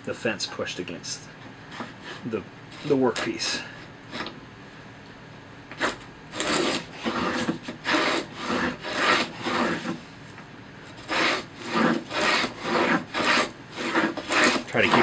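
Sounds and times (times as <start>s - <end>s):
hand plane cutting wood: 1.7s - 3.3s, 5.7s - 10.0s, 10.9s - 15.0s.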